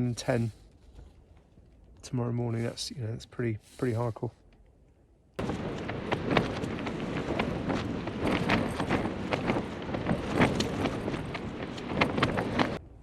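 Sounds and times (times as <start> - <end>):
rain hitting tent: 5.4 - 12.8
tent fabric flapping: 5.4 - 12.8
wind rushing: 5.4 - 13.0.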